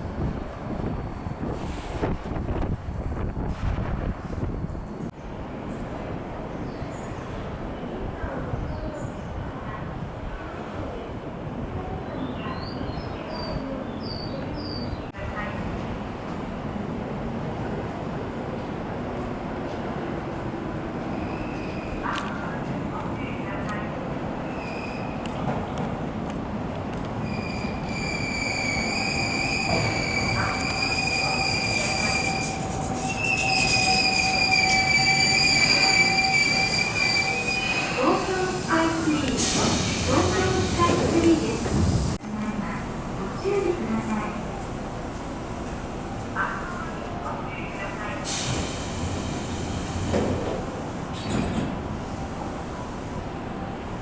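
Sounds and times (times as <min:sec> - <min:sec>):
train rolling on rails: 0:00.0 - 0:54.0
high-pitched wheel squeal: 0:27.3 - 0:38.0.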